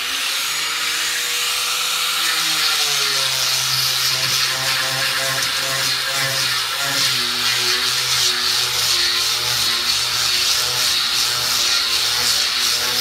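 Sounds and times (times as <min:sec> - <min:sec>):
electric grinder on wood: 0:00.0 - 0:13.0.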